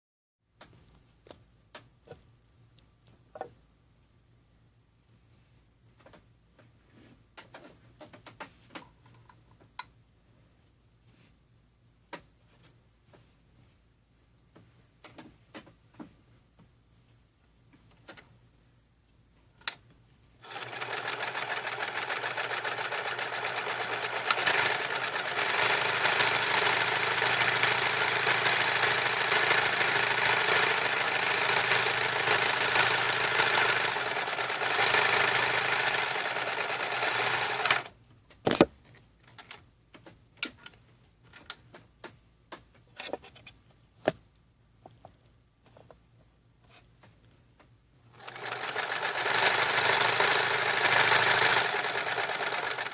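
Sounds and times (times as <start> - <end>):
sewing machine stitching: 20.4 - 37.9, 48.2 - 52.9.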